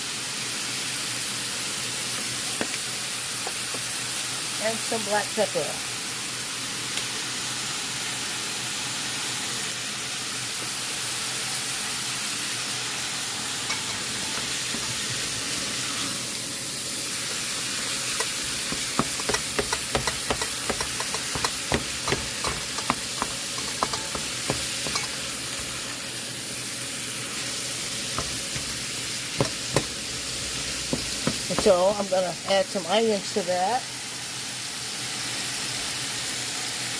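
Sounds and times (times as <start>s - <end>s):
meat sizzling in a pan: 0.0s - 36.9s
utensil scraping a pan: 13.7s - 16.0s, 17.8s - 25.9s, 28.1s - 31.9s.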